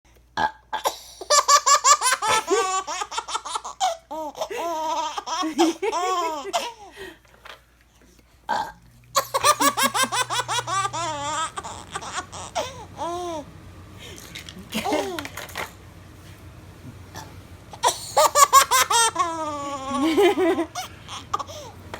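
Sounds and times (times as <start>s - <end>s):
baby laughing: 0.8s - 7.0s, 9.1s - 13.5s, 14.6s - 15.3s, 17.8s - 21.8s
woman burping: 8.5s - 8.8s.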